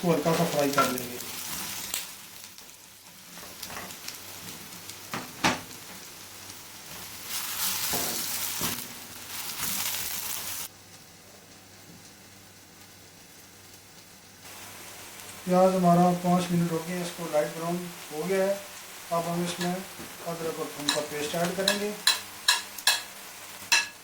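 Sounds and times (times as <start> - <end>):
onions sizzling in hot oil: 0.0 - 24.0
spoon knocking against pan: 20.9 - 23.1, 23.7 - 24.0.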